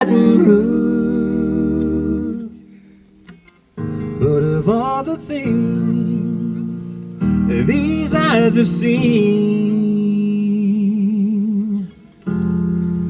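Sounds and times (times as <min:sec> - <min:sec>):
men singing harmony: 0:00.0 - 0:02.7, 0:04.2 - 0:10.8.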